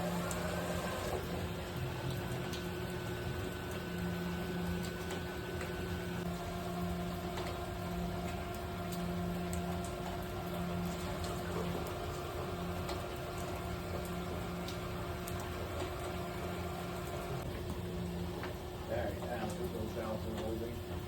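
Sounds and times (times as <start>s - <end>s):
water running off: 0.0s - 3.7s
low machine hum: 0.0s - 21.0s.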